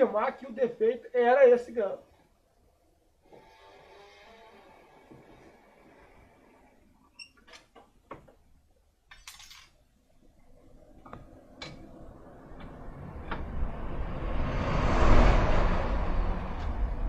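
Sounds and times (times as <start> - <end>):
rushing noise: 11.8 - 17.0.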